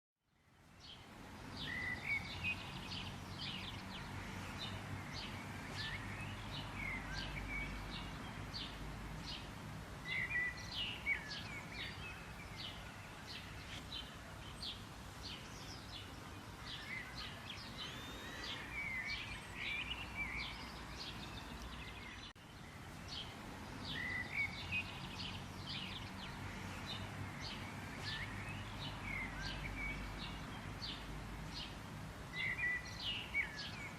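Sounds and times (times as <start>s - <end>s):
songbirds chirping: 0.2s - 33.9s.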